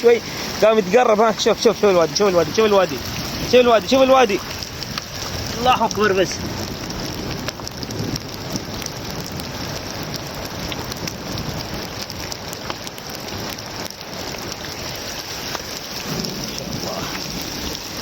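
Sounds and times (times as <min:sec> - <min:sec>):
heavy rain falling: 0:00.0 - 0:18.0.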